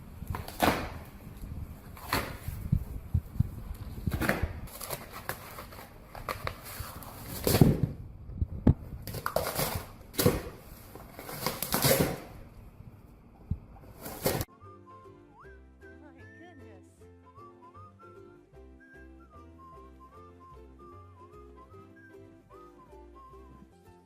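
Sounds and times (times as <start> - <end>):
rustling and crunching: 0.2 - 8.0, 8.7 - 12.5.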